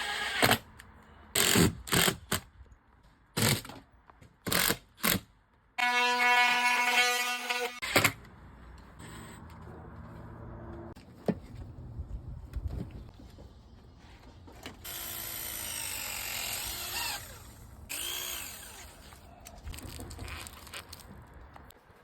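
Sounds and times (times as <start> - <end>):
power drill whining: 14.8 - 19.3.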